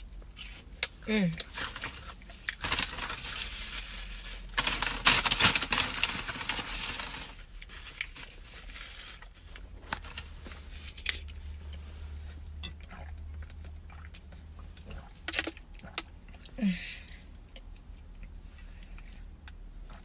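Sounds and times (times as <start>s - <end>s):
paper packaging crinkling: 1.4s - 11.4s.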